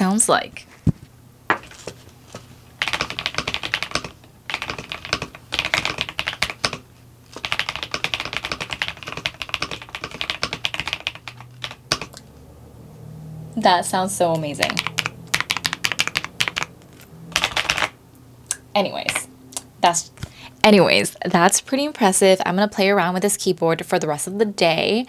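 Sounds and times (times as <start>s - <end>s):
mechanical keyboard typing: 2.8s - 12.2s, 14.6s - 16.7s, 17.3s - 18.0s.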